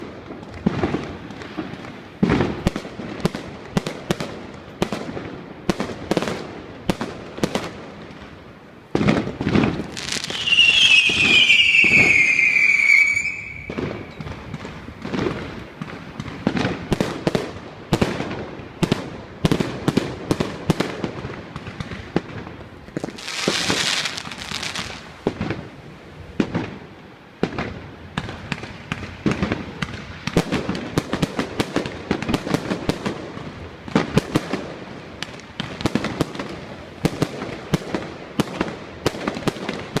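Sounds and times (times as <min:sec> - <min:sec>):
fireworks bangs and pops: 0:00.0 - 0:40.0
whistling firework shrieking: 0:09.9 - 0:14.4.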